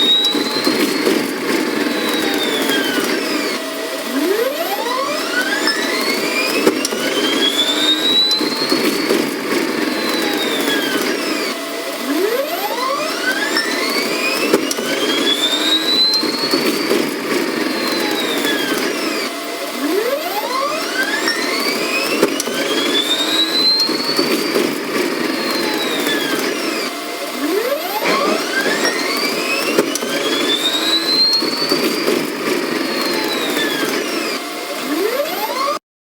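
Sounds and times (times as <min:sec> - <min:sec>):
rising and falling whine: 0:00.0 - 0:09.2, 0:17.7 - 0:35.8
steady mechanical hum: 0:00.0 - 0:35.8.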